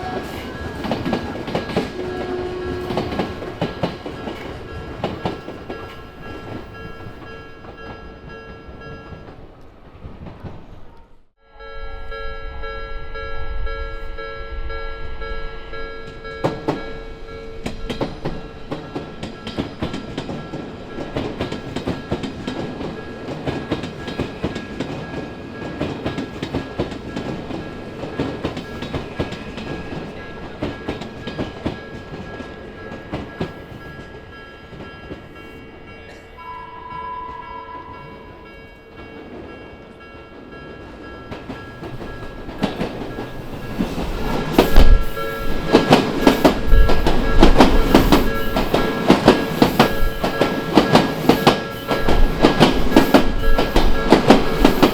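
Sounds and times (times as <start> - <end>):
train wheels clattering: 0.0 - 10.8, 17.6 - 36.3, 40.4 - 54.9.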